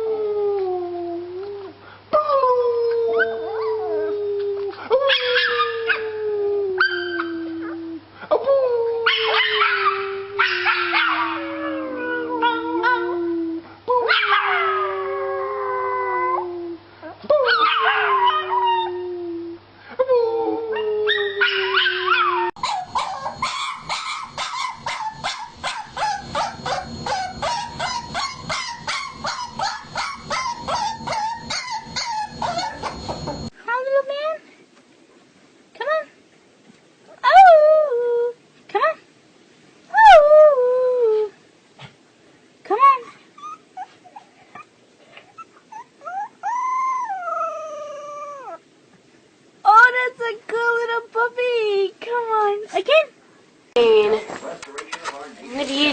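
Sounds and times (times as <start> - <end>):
puppy howling: 8.8 - 13.4, 14.1 - 16.6, 17.4 - 19.2, 20.3 - 33.5, 45.7 - 48.6.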